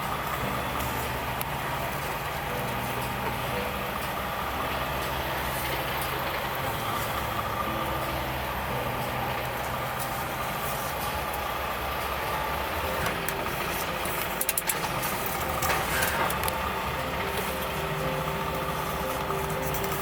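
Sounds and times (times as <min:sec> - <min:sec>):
truck engine running: 0:00.0 - 0:20.0
clicks: 0:13.0 - 0:17.9.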